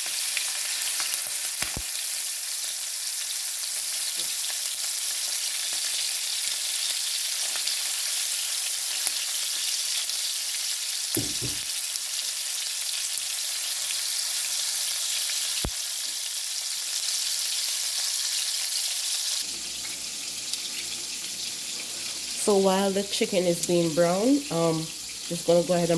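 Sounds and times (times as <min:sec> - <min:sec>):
chicken sizzling in oil: 0:00.0 - 0:25.9
brief thump: 0:11.2 - 0:11.6.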